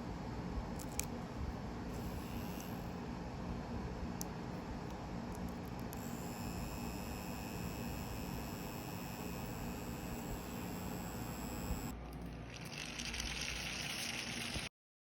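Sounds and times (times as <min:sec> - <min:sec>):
vacuum engine running: 0:01.9 - 0:03.1, 0:05.9 - 0:11.9.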